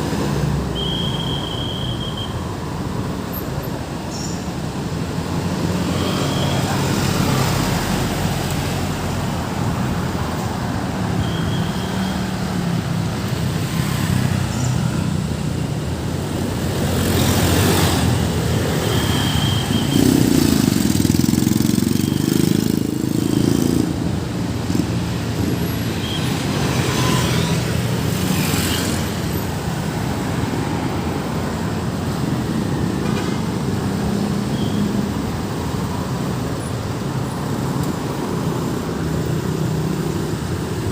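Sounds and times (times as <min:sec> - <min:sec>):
road traffic passing: 0:00.0 - 0:40.9.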